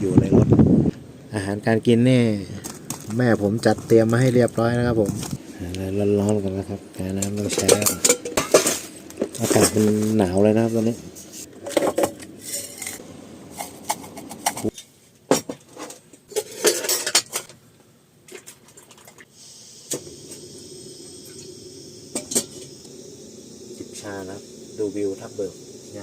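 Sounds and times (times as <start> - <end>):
dishes and cutlery clinking: 13.9 - 17.5.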